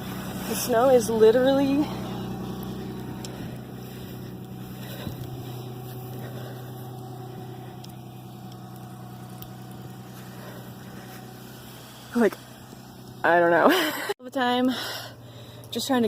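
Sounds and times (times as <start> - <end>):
car engine idling: 0.0 - 16.0
faint ticks: 2.6 - 3.6, 7.6 - 10.6.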